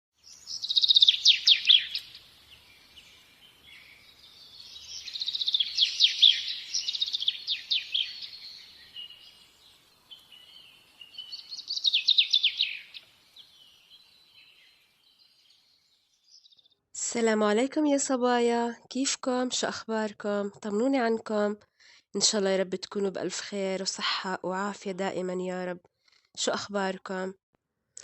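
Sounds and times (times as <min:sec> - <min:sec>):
songbird chirps and trills: 0:00.2 - 0:25.8.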